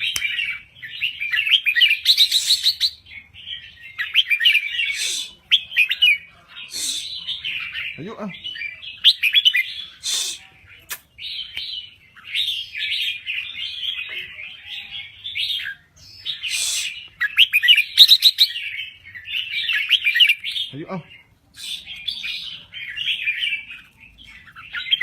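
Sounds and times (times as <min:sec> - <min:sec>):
bird singing chattering song: 0:00.0 - 0:25.0.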